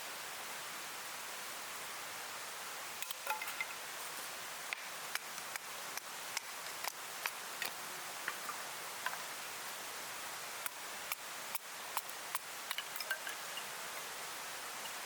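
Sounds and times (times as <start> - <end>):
steady hiss: 0.0 - 15.0
sharp clicks and pops: 4.7 - 9.2, 10.6 - 13.7.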